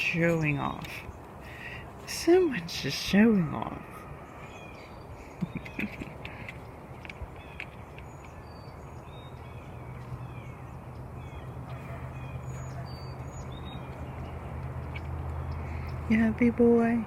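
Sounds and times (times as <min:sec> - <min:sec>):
birds chirping and whistling: 0:03.6 - 0:16.1.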